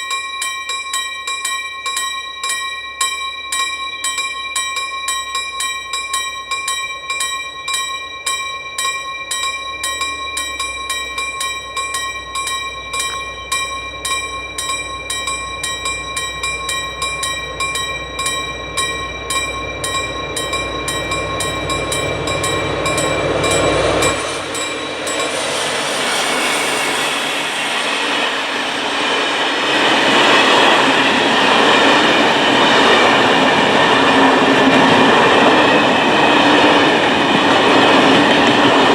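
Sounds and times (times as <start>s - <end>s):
level crossing bell ringing: 0.0s - 25.8s
train wheels rumbling and clattering: 9.6s - 38.9s.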